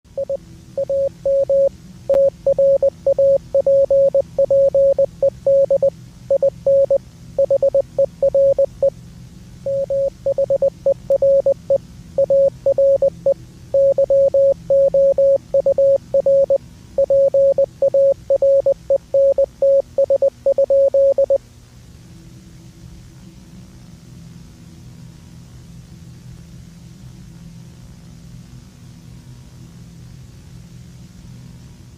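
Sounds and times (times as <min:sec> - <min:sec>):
faint low hum: 0:00.1 - 0:31.9
morse code beeps: 0:00.2 - 0:08.9, 0:09.7 - 0:21.4.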